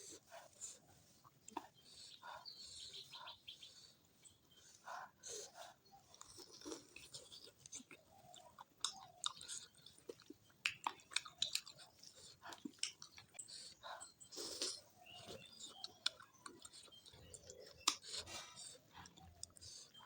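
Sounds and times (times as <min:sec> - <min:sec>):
person chewing food: 0:00.0 - 0:20.0
wet mouth clicks: 0:08.7 - 0:13.5, 0:15.4 - 0:19.6.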